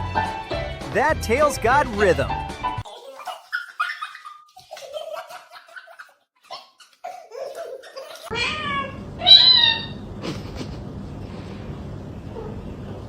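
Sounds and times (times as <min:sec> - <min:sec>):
cat meowing: 0:08.3 - 0:10.0.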